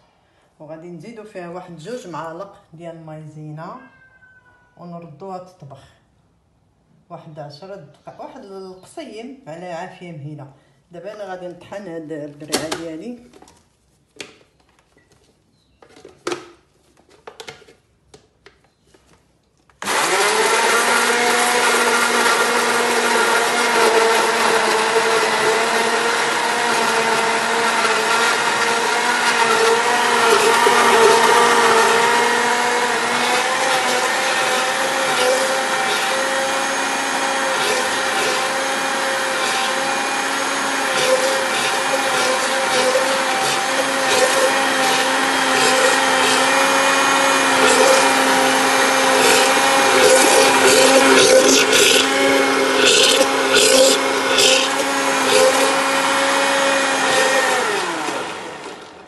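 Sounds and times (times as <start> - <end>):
electric blender motor running: 19.8 - 59.0.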